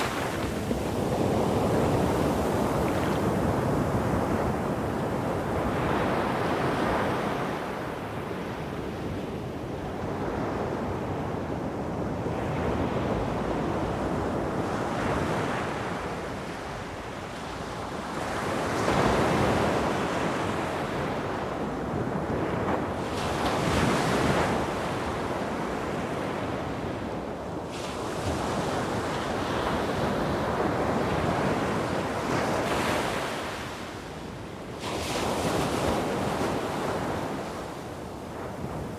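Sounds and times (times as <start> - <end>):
sea waves washing onto shore: 0.0 - 5.1.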